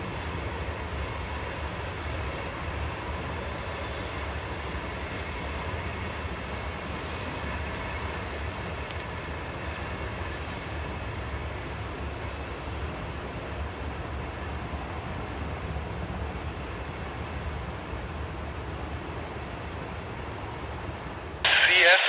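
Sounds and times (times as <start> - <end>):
train wheels rumbling: 0.0 - 13.0.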